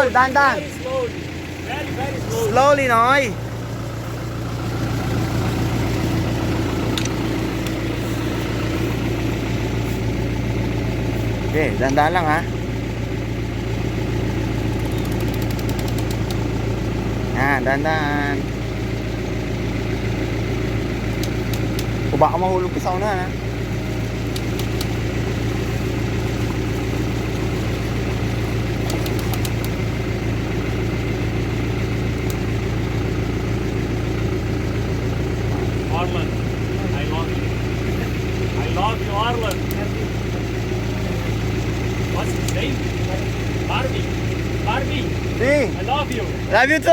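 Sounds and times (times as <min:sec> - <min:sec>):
car engine idling: 0:00.0 - 0:46.9
faint clicks: 0:14.8 - 0:16.4, 0:21.1 - 0:22.0, 0:24.2 - 0:25.0, 0:28.8 - 0:29.8.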